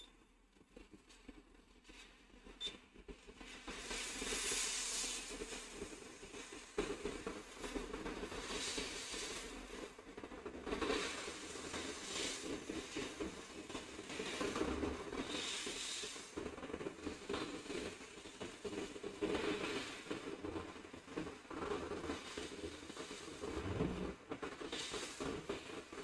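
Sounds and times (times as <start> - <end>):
hot air rework station blowing: 23.4 - 24.2
steady hum: 23.4 - 24.2.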